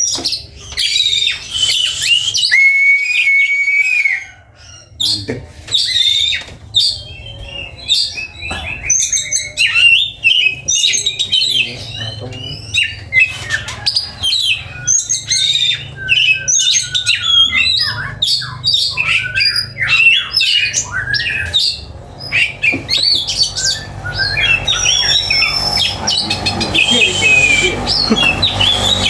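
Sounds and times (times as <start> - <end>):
bird singing: 0.0 - 29.0
steady low hum: 21.4 - 29.0.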